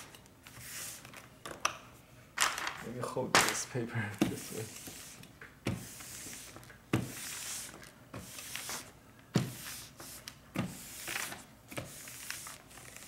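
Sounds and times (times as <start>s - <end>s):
iron rubbing on paper: 4.3s - 8.9s, 9.5s - 13.0s.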